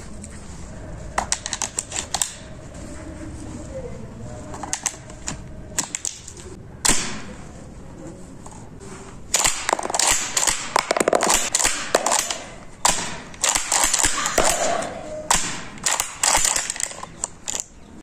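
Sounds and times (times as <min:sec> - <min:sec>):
shotgun parts clicking and knocking: 0:01.2 - 0:02.5, 0:04.5 - 0:06.6, 0:09.3 - 0:17.8.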